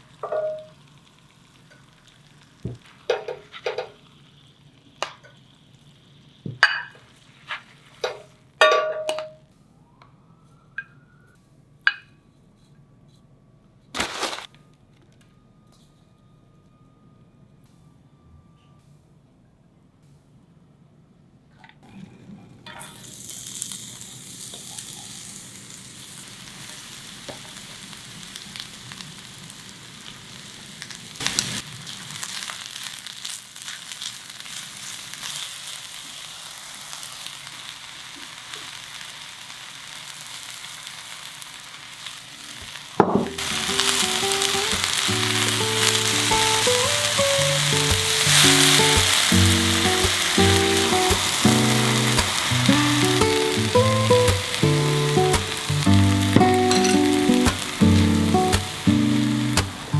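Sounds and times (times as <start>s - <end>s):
food sizzling in pan: 0.0s - 9.4s, 14.0s - 14.5s, 22.7s - 59.9s
piano-like music: 43.2s - 59.9s.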